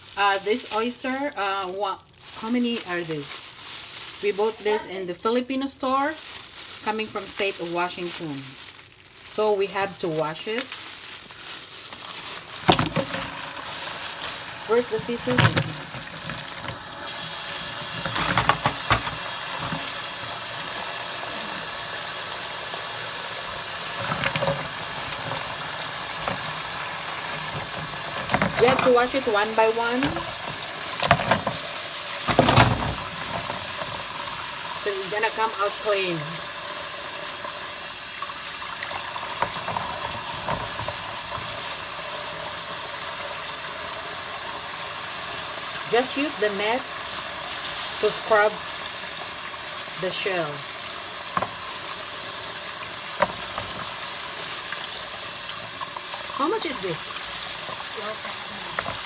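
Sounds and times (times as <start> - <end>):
tap running into sink: 12.5 - 35.6, 36.8 - 59.0.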